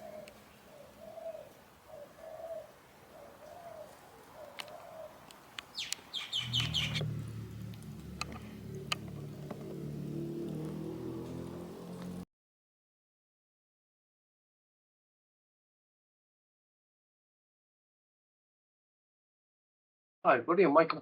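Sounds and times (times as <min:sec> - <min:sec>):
small bird chirping: 0:00.0 - 0:09.6
dove cooing: 0:00.0 - 0:11.6
low steady hum: 0:06.4 - 0:09.6.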